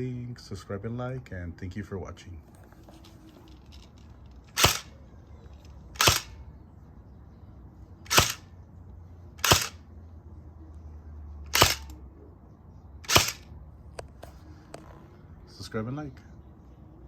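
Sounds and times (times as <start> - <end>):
airsoft gun shots: 4.5 - 4.9, 6.0 - 6.4, 8.1 - 8.4, 9.4 - 9.8, 11.5 - 11.9, 13.1 - 13.4.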